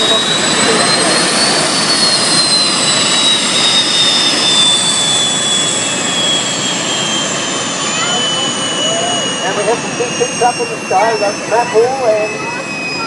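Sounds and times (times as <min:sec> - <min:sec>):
jet engine roaring with whine: 0:00.0 - 0:13.0.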